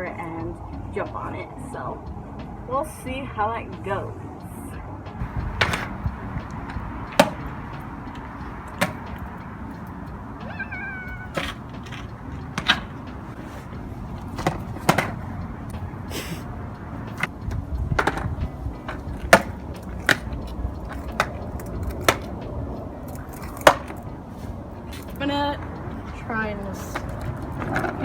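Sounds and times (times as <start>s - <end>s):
skateboard clacks: 5.2s - 10.2s, 11.0s - 15.8s, 17.0s - 24.2s, 24.8s - 28.0s
skateboard wheels rumbling: 5.2s - 28.0s.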